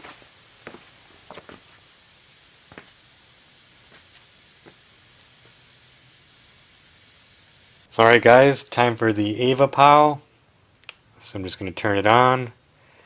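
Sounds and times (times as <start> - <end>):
air hissing from tire valve: 0.0 - 7.9.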